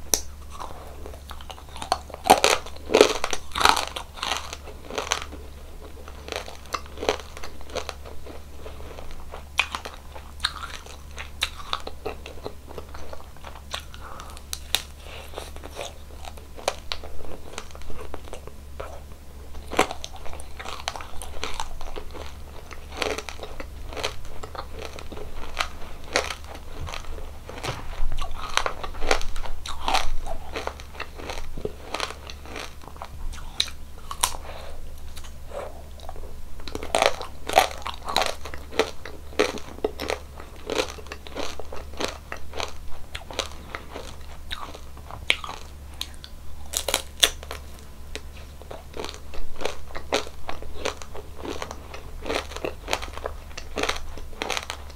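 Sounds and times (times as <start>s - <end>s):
crunching and chewing ice cream: 0.0s - 54.9s.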